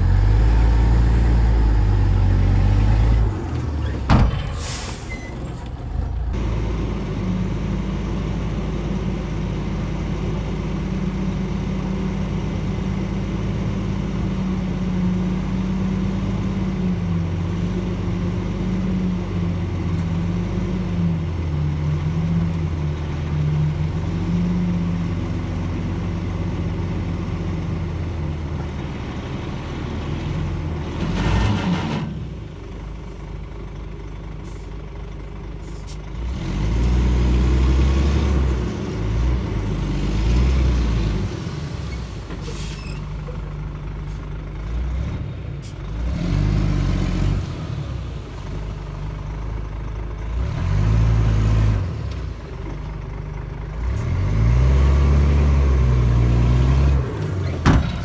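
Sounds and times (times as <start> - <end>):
bulldozer diesel engine working: 0.0 - 58.0
brief hiss: 4.4 - 5.3.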